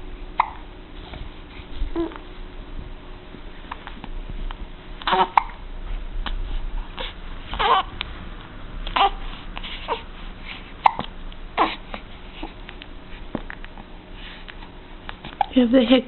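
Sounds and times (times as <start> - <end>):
baby hiccuping: 0.4 - 0.6, 5.0 - 5.6, 10.8 - 11.8.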